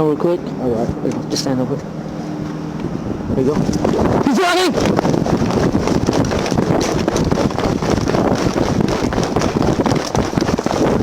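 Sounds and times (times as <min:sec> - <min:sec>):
wind rushing over microphone: 0:00.0 - 0:11.0
rattling gear: 0:03.6 - 0:11.0
running footfalls: 0:03.6 - 0:11.0.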